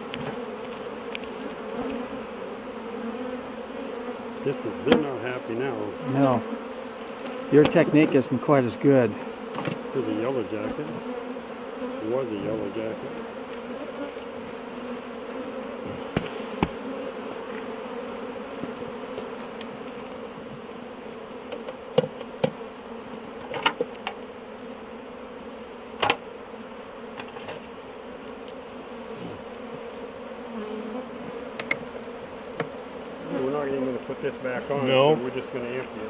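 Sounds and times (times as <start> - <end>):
honey bees buzzing: 0.0 - 36.0
sharp clicks and knocks: 23.4 - 24.2, 26.0 - 26.2, 31.6 - 32.0.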